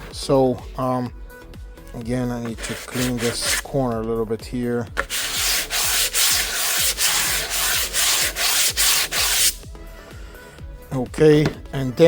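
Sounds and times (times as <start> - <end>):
sandpaper rubbing metal: 2.4 - 3.7, 5.0 - 9.6.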